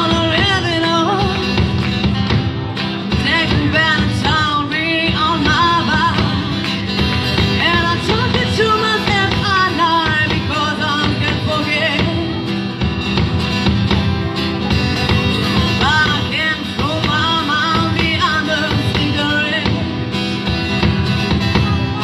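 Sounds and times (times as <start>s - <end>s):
acoustic guitar accompaniment: 0.0s - 22.0s.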